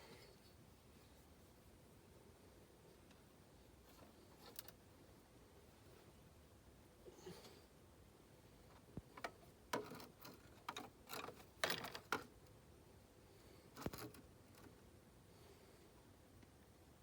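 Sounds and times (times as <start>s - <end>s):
light irregular clicks and knocks: 2.9s - 4.8s, 8.6s - 12.6s, 13.7s - 14.9s.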